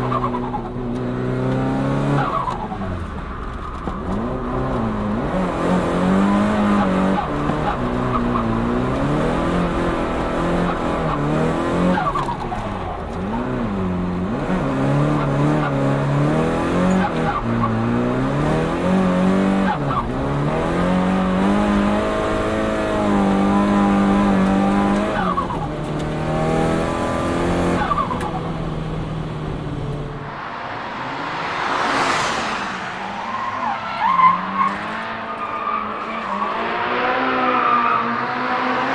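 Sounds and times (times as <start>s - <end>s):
tyres skidding on tarmac: 0.0s - 38.9s
car engine revving: 14.2s - 38.9s.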